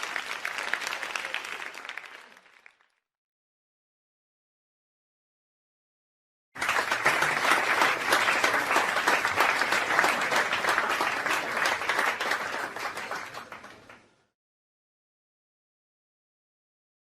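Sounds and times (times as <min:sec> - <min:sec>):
people applauding: 0:00.0 - 0:03.0, 0:06.6 - 0:14.2.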